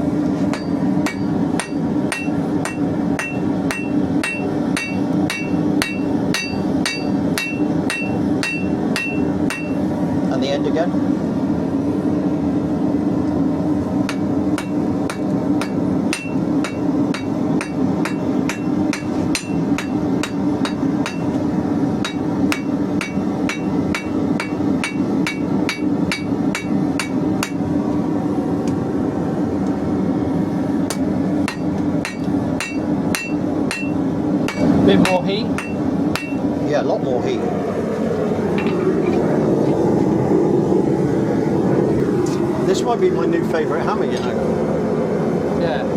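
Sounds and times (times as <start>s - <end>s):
steady low hum: 0.0s - 45.9s
hammer striking steel bar: 0.5s - 9.8s, 14.1s - 21.4s, 22.0s - 27.6s, 30.9s - 36.4s.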